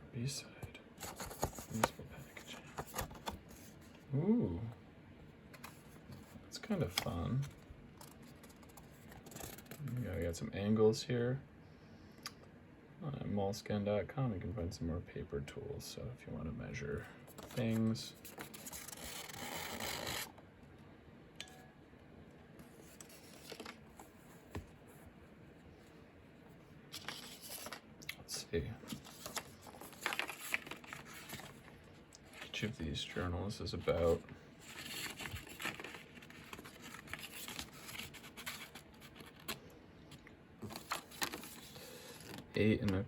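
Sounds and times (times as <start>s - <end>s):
paper rustling and sliding: 17.3s - 20.3s, 22.7s - 25.0s, 26.9s - 27.8s, 28.9s - 39.6s, 40.6s - 42.5s.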